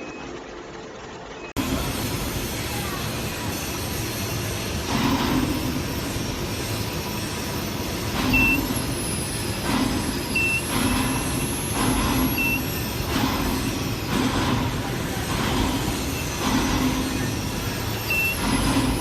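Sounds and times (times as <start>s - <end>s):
industrial machinery noise: 0.0s - 19.0s
short high beep: 8.3s - 8.6s, 18.1s - 18.4s.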